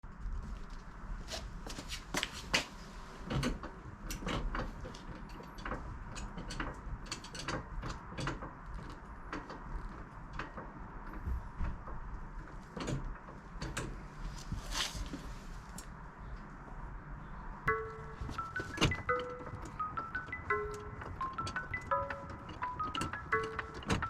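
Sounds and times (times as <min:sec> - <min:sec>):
mechanical clicks and knocks: 0:17.7 - 0:24.0.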